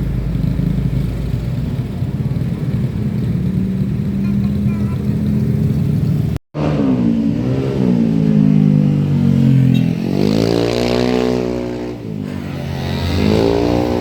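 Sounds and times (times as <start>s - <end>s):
bus engine accelerating: 0.0s - 10.4s.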